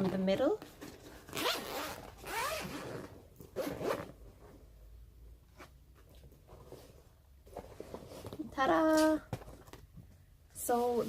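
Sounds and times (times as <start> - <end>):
bag handling: 0.7 - 4.1
bag zipper being pulled open: 1.2 - 4.2.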